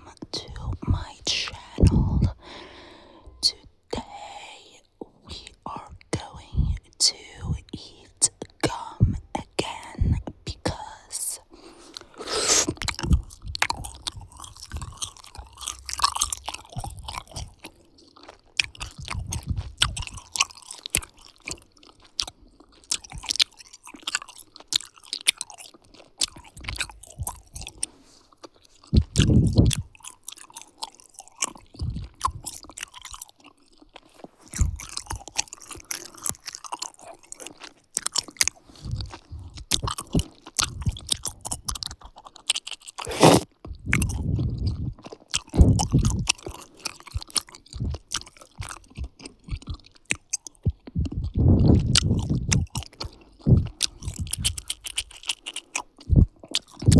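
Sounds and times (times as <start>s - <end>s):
person chewing gum: 0.0s - 56.9s.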